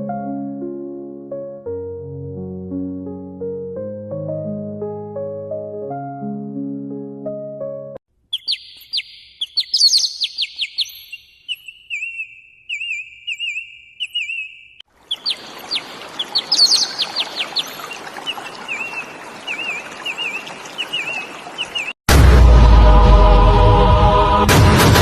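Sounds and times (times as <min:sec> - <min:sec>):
songbird chirps: 0:08.2 - 0:22.0
bird wavering whistled notes: 0:08.3 - 0:21.9.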